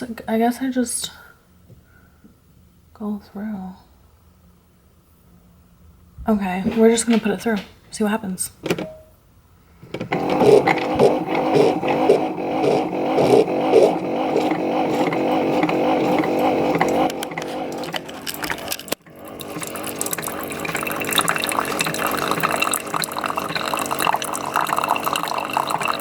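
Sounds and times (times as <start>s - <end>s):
coffee maker pump humming: 10.0s - 26.0s
hot water spattering into cup: 17.7s - 26.0s.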